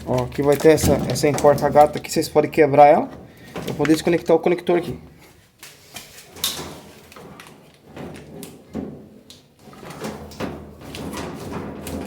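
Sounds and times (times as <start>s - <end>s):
plastic clicks and scrapes: 5.6s - 12.0s.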